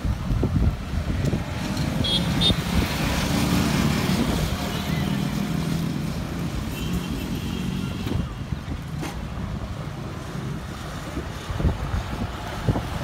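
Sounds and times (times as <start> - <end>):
storm wind buffeting microphone: 0.0 - 2.0, 10.4 - 13.0.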